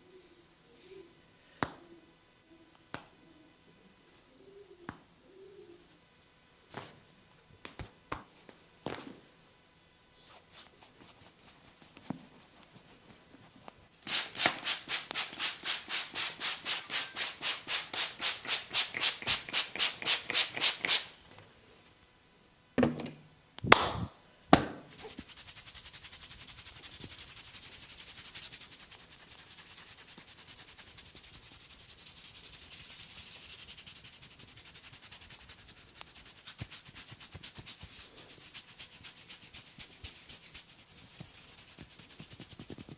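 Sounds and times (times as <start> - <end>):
hands rubbing and scratching hair: 10.2 - 21.1, 24.9 - 42.9
sharp loud smacks: 23.7 - 24.7.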